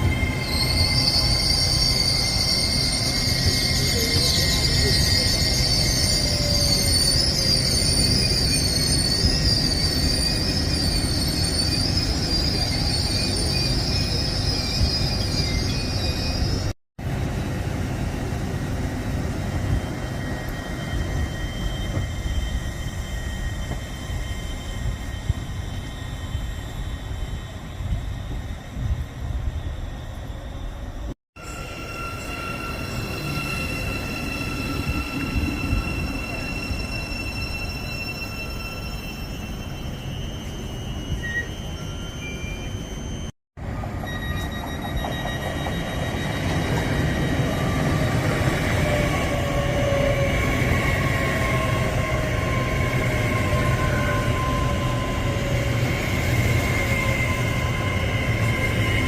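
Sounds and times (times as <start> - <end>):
high wavering squeal: 0.0 - 16.8, 19.2 - 59.0
train wheels rumbling on rail: 0.0 - 59.0
high-pitched whines: 19.6 - 59.0.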